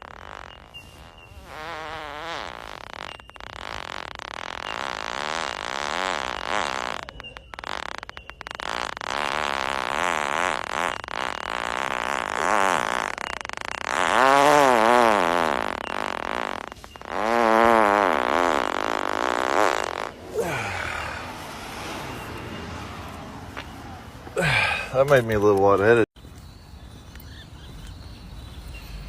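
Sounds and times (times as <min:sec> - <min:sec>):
man farting: 0:00.0 - 0:21.4, 0:24.3 - 0:25.9.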